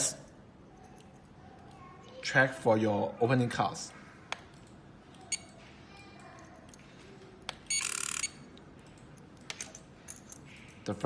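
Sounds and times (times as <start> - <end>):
keypad beeping: 7.6 - 8.4.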